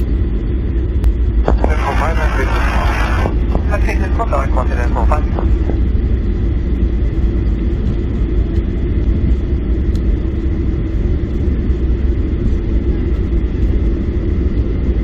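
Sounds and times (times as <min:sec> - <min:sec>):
low rumble of engines and wheels: 0:00.0 - 0:15.0
faint high whine: 0:01.2 - 0:08.2.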